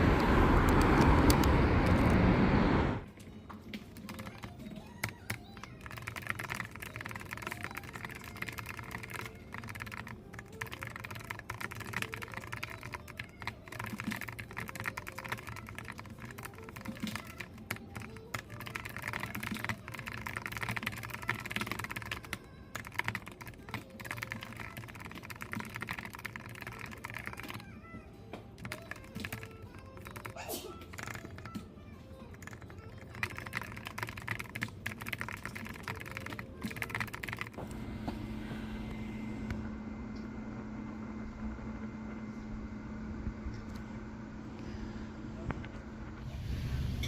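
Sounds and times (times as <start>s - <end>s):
keyboard typing clicks: 3.7s - 27.7s, 28.3s - 31.6s, 32.3s - 37.6s.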